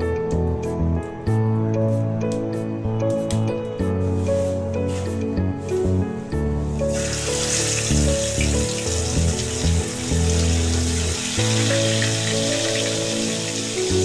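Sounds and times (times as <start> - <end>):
background music: 0.0 - 14.0
steady hiss: 4.1 - 14.0.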